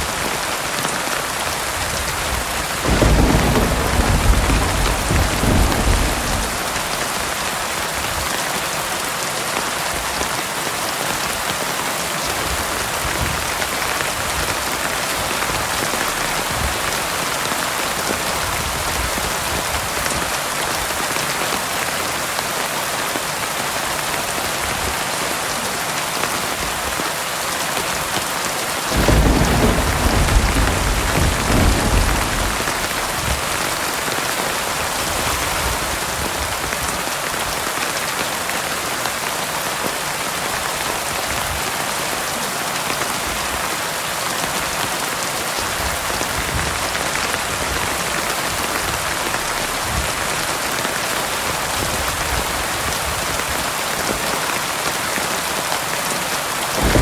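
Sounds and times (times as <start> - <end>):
heavy rain falling: 0.0 - 57.0
low rumble of thunder: 1.8 - 8.2, 28.9 - 37.6, 56.7 - 57.0.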